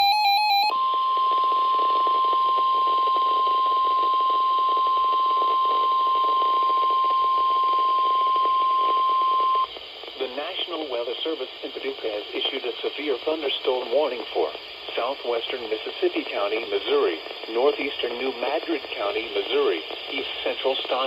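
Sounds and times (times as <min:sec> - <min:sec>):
steady high alarm tone: 0:00.0 - 0:09.7
radio hiss: 0:01.0 - 0:21.0.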